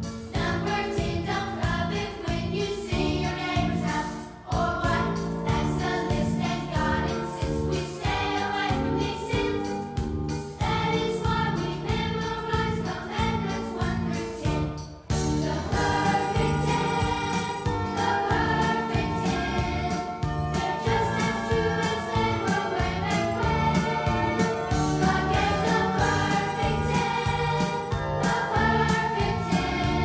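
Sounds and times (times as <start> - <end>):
choir singing: 0.3 - 9.8, 10.6 - 30.0
accompaniment with steady beat: 8.0 - 30.0.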